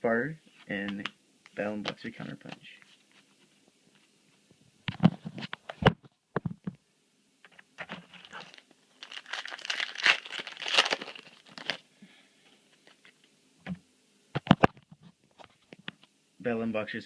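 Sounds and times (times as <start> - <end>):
foil wrapper crinkling and tearing: 8.1 - 11.9.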